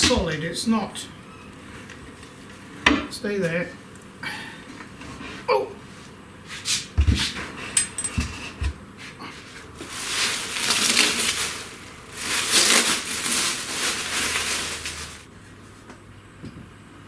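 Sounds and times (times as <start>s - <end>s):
packing material rustling and scraping: 9.4s - 15.3s.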